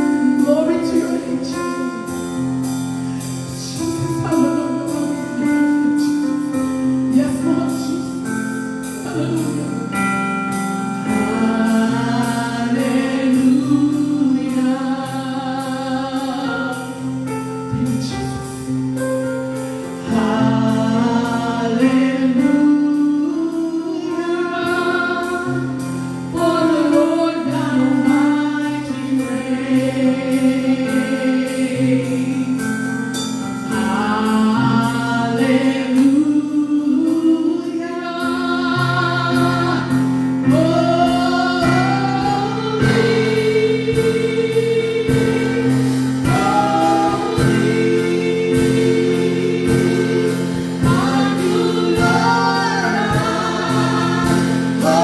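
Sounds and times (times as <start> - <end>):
choir singing worship song: 0.0 - 55.0
percussion strokes: 0.0 - 55.0
sustained instrumental chords: 37.8 - 55.0.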